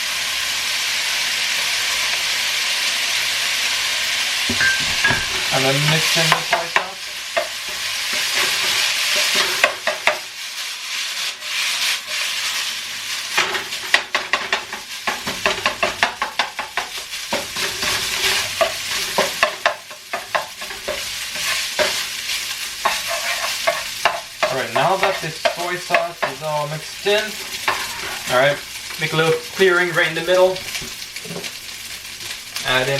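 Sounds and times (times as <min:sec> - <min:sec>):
rice sizzling in a wok: 0:00.0 - 0:32.9
utensil scraping a wok: 0:04.6 - 0:29.2.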